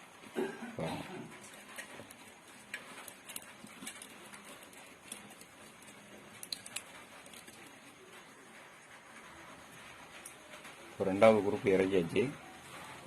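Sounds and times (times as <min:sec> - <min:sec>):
coil wire clicking and rustling: 0:01.3 - 0:09.0.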